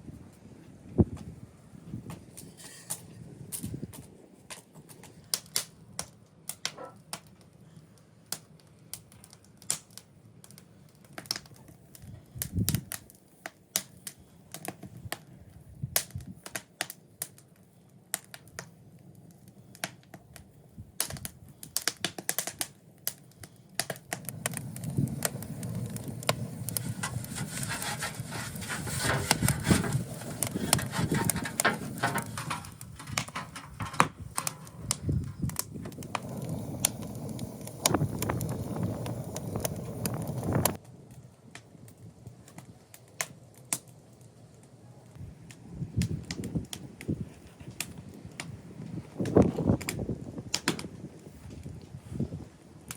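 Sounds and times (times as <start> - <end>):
clatter and rustling: 26.7 - 35.4.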